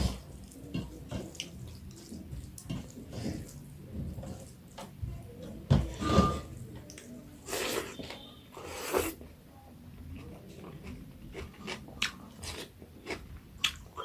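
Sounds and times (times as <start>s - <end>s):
wet chewing and mouth smacks: 10.8s - 14.0s.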